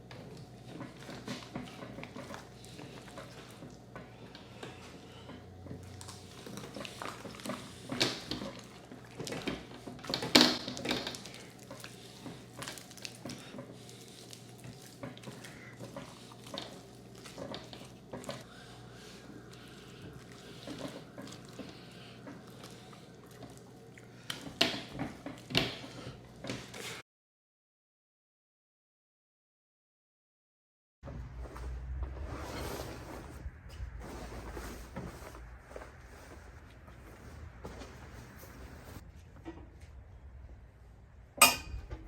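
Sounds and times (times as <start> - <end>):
wet handling of raw meat: 11.0 - 24.4.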